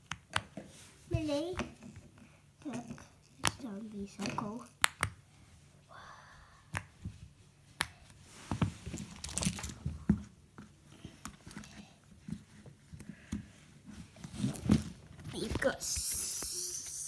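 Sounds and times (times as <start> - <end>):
crinkling and rustling: 8.2 - 16.6.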